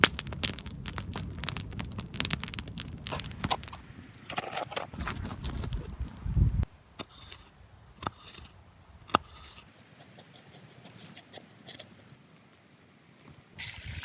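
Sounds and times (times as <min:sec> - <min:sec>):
campfire crackling: 0:00.0 - 0:06.7
soft hiss: 0:10.3 - 0:14.0.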